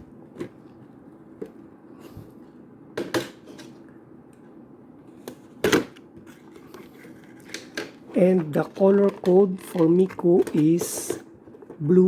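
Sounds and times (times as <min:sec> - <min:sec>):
plastic parts clicking and knocking: 0:07.4 - 0:11.8.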